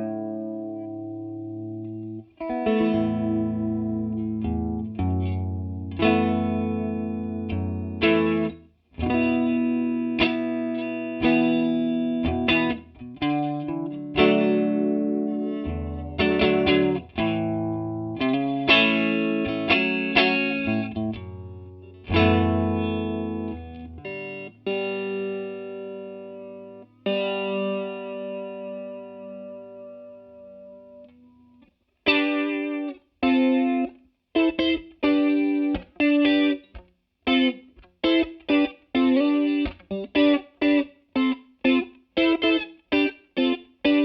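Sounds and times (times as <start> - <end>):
electric guitar chords with chorus: 0.0 - 44.0.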